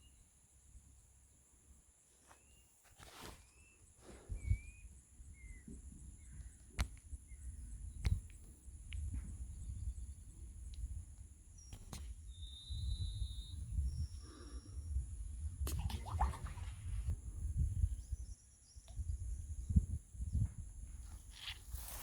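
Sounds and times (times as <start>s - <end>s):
bird trill and whistle: 3.4s - 6.3s, 11.6s - 14.2s
bird chirps: 3.4s - 8.2s, 11.5s - 15.0s.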